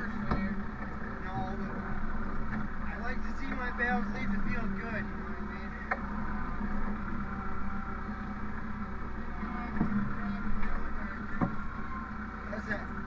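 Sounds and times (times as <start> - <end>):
machine engine running: 0.0 - 13.0
short knocks: 9.7 - 11.8.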